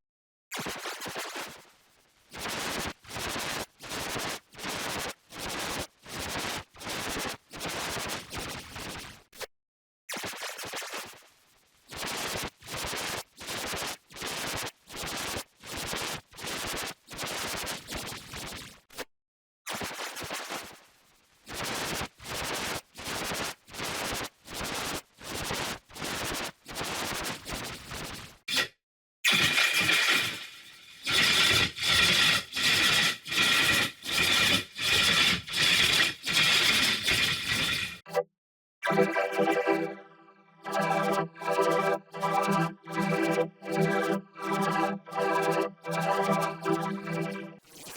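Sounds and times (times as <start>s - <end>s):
harsh distorted noise bursts: 29.3s - 38.0s.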